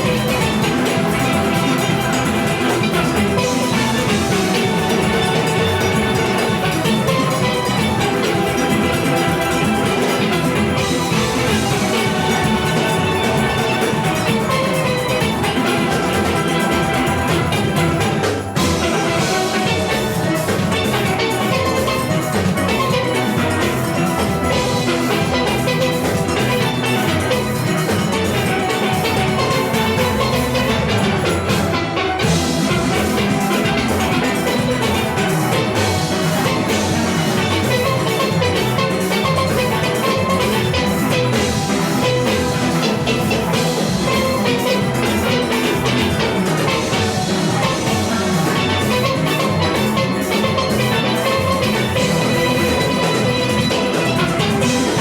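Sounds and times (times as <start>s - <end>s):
drum and percussion beat: 0.0s - 55.0s
steel pan ensemble: 0.0s - 55.0s.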